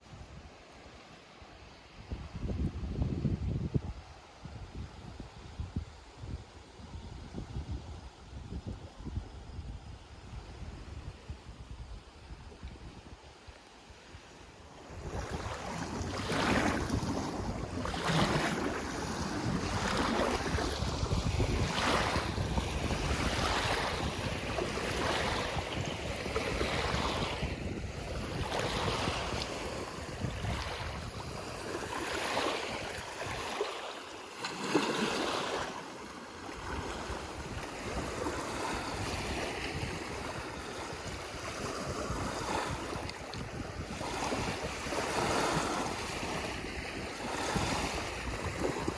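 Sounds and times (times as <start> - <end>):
wind buffeting microphone: 2.0 - 34.0, 34.6 - 48.9
lake waves washing on shore: 12.8 - 48.9.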